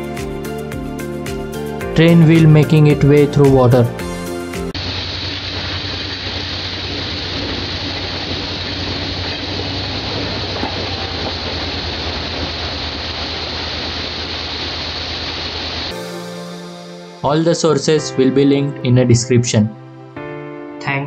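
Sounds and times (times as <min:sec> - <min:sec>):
low hum: 0:04.7 - 0:16.0
train wheels spraying through water: 0:04.8 - 0:16.1.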